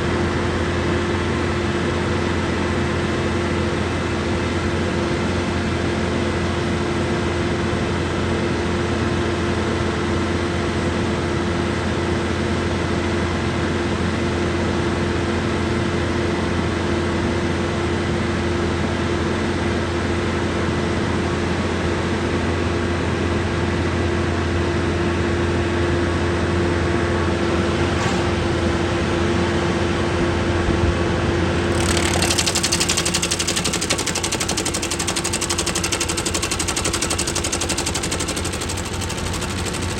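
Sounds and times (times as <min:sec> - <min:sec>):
diesel engine running: 0:27.2 - 0:39.9
stump grinder rasping clatter: 0:27.3 - 0:39.9.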